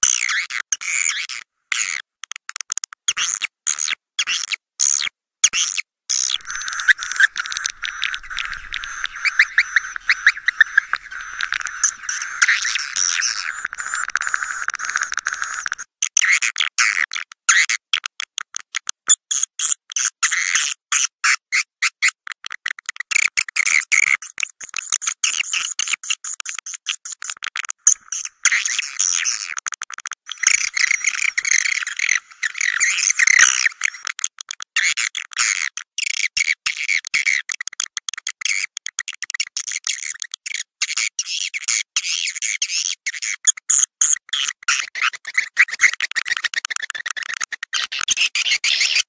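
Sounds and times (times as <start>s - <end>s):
swiftlets chattering: 6.4s - 15.8s.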